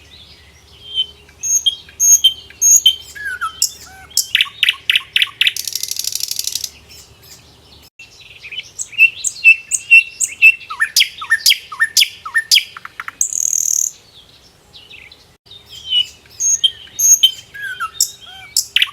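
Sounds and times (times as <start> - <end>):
songbirds chirping and singing: 0.0 - 18.9
fast buzzy bird trill: 0.9 - 7.4, 15.6 - 18.9.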